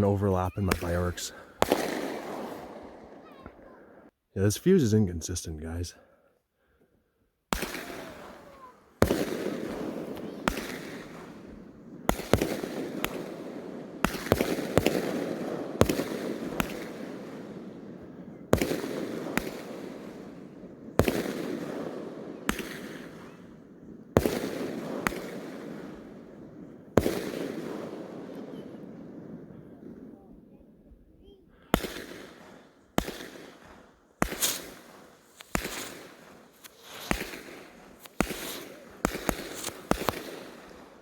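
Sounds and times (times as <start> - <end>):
fireworks bangs: 0.0 - 5.9, 7.5 - 30.6, 31.2 - 41.0.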